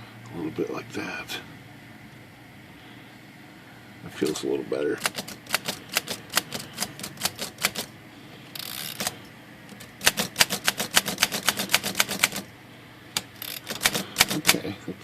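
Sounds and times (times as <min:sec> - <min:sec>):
manual typewriter keys clicking: 0:05.0 - 0:07.9, 0:08.6 - 0:12.5, 0:13.2 - 0:14.6.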